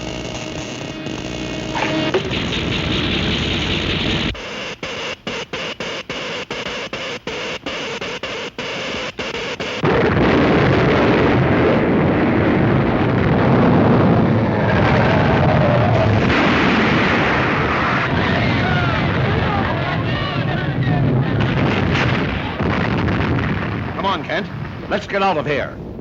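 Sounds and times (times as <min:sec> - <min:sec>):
crackling electrical hiss: 0:00.0 - 0:18.2
deep earthquake rumble: 0:01.7 - 0:04.4, 0:09.8 - 0:26.0.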